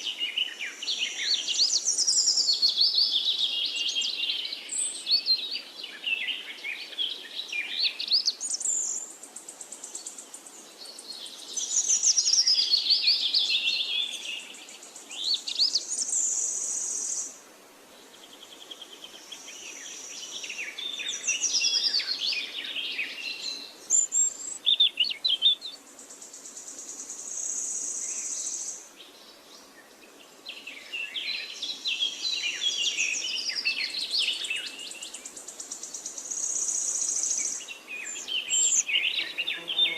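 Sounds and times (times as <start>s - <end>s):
birds chirping and singing: 19.6s - 26.4s, 29.6s - 39.9s.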